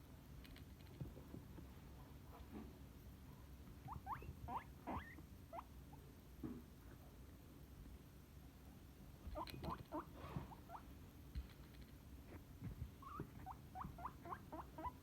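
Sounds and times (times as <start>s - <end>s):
guinea pig squeaking: 3.8s - 6.0s, 9.2s - 10.9s, 13.0s - 15.0s.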